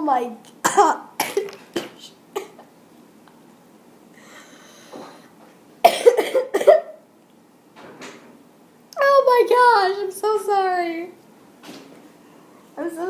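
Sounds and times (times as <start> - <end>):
child coughing harshly: 0.6 - 2.7, 5.8 - 7.0
faint breath: 4.1 - 5.4.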